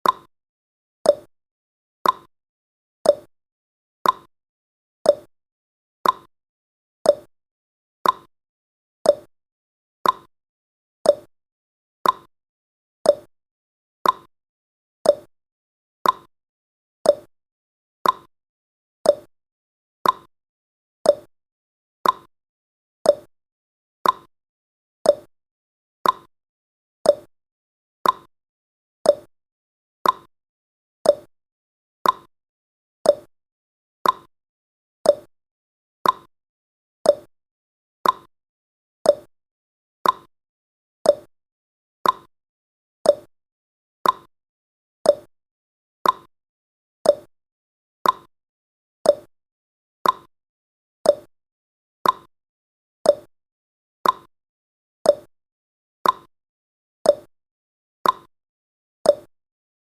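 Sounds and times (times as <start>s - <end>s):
timer ticking: 0.0s - 0.3s, 1.1s - 1.3s, 2.0s - 2.3s, 3.1s - 3.3s, 4.0s - 4.3s, 5.1s - 5.3s, 6.0s - 6.3s, 7.1s - 7.3s, 8.0s - 8.3s, 9.1s - 9.3s, 10.0s - 10.3s, 11.1s - 11.3s, 12.0s - 12.3s, 13.1s - 13.3s, 14.0s - 14.3s, 15.1s - 15.3s, 16.0s - 16.3s, 17.1s - 17.3s, 18.0s - 18.3s, 19.1s - 19.3s, 20.0s - 20.3s, 21.1s - 21.3s, 22.0s - 22.3s, 23.1s - 23.3s, 24.0s - 24.3s, 25.1s - 25.3s, 26.0s - 26.3s, 27.1s - 27.3s, 28.0s - 28.3s, 29.1s - 29.3s, 30.0s - 30.3s, 31.0s - 31.3s, 32.0s - 32.3s, 33.1s - 33.3s, 34.0s - 34.3s, 35.1s - 35.3s, 36.0s - 36.3s, 37.1s - 37.3s, 38.0s - 38.3s, 39.1s - 39.3s, 40.0s - 40.3s, 41.1s - 41.3s, 42.0s - 42.3s, 43.1s - 43.3s, 44.0s - 44.3s, 45.1s - 45.3s, 46.0s - 46.3s, 47.0s - 47.3s, 48.0s - 48.3s, 49.1s - 49.3s, 50.0s - 50.3s, 51.1s - 51.3s, 52.0s - 52.3s, 53.1s - 53.3s, 54.0s - 54.3s, 55.1s - 55.3s, 56.0s - 56.3s, 57.1s - 57.3s, 58.0s - 58.3s, 59.1s - 59.3s.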